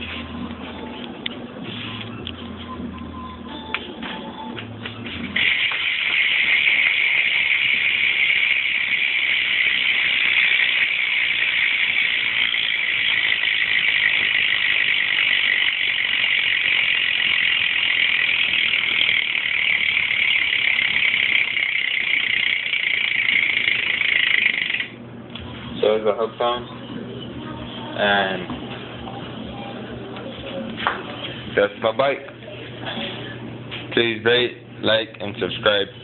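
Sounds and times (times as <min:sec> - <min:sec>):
bike hub ratcheting buzz: 0:05.2 - 0:25.0.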